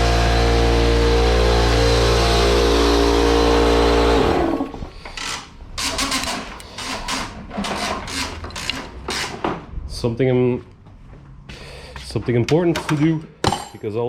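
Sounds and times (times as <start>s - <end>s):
electric blower motor whine: 0.0s - 4.9s.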